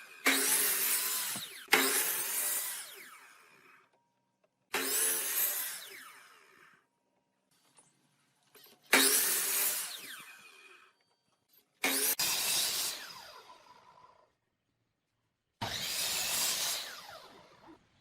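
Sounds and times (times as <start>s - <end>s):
power tool cutting wood: 0.0s - 3.9s, 4.7s - 6.8s, 8.9s - 11.0s, 11.8s - 14.2s, 15.6s - 17.8s.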